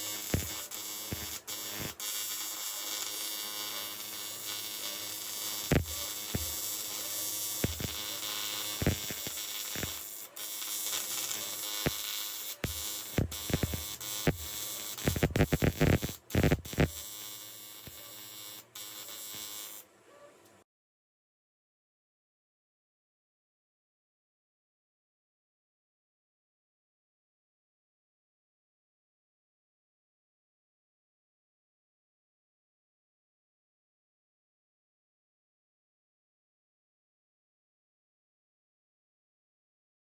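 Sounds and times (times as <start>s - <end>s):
welding arc buzzing: 0.0s - 19.9s
sharp clicks: 0.2s - 2.0s, 4.8s - 17.1s.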